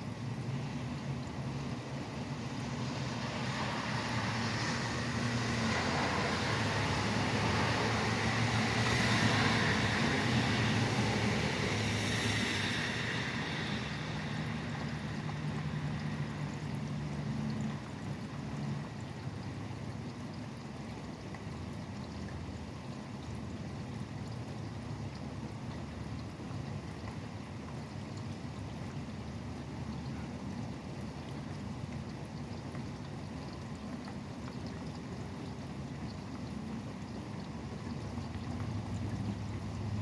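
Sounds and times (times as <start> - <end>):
low engine hum: 0.0 - 40.0
steady rain: 0.3 - 19.0
tyre hiss on wet road: 2.4 - 16.4.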